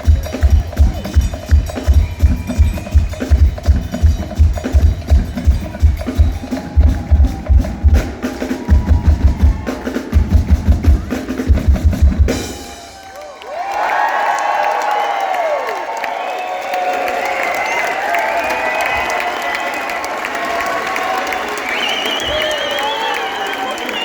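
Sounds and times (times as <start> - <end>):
band playing heavy drum beat: 0.0 - 13.2
crowd cheering and whistling: 0.0 - 24.0.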